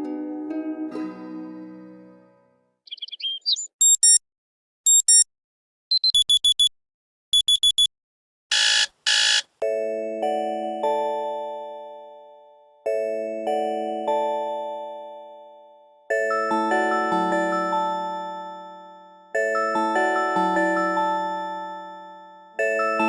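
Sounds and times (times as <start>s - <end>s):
short electronic beeps: 3.5s - 4.2s, 4.9s - 5.3s, 5.9s - 6.7s, 7.3s - 7.9s
buzzy tones: 8.5s - 9.4s.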